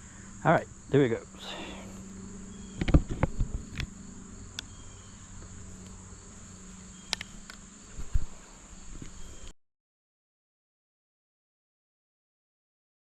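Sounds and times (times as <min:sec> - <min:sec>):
crickets trilling: 0:00.0 - 0:09.5.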